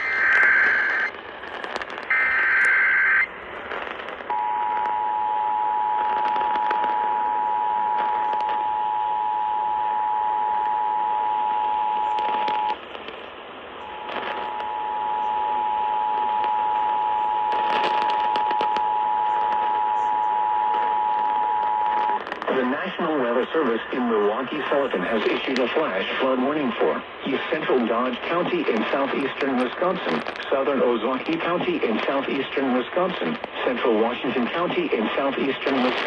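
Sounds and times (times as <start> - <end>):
warbling digital data burst: 0.0 - 1.2
radio static with crackles: 0.0 - 36.0.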